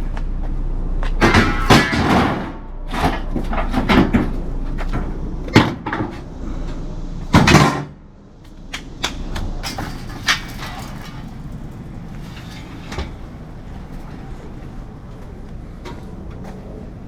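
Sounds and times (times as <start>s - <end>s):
clunks and knocks: 0.2s - 8.0s, 8.7s - 14.3s.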